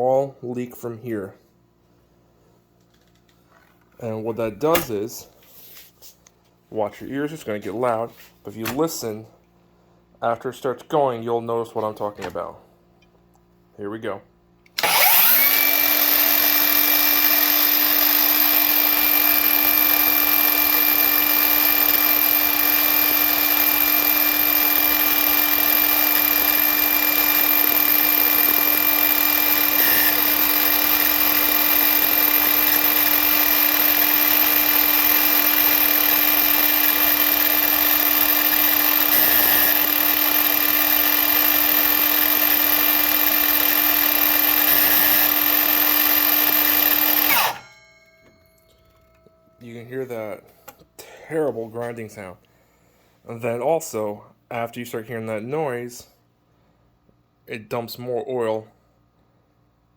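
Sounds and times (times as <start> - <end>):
grinding bearing: 14.8 - 47.6
miter saw motor whine: 14.8 - 47.7.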